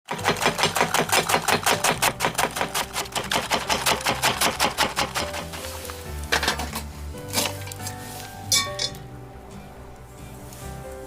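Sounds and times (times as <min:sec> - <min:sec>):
knife chopping on cutting board: 0:00.1 - 0:05.5
background music: 0:00.1 - 0:11.0.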